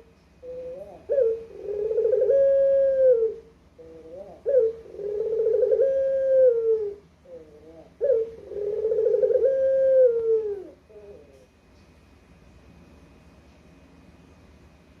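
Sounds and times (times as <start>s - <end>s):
dove cooing: 0.0s - 11.5s.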